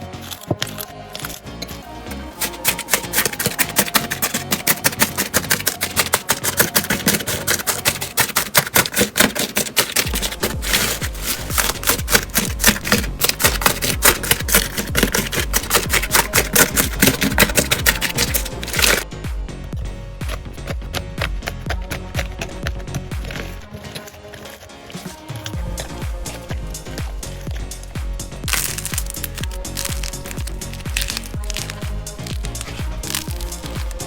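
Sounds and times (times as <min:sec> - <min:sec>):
background music: 0:00.0 - 0:34.0
slime clicking and popping: 0:02.4 - 0:19.0, 0:28.4 - 0:34.0.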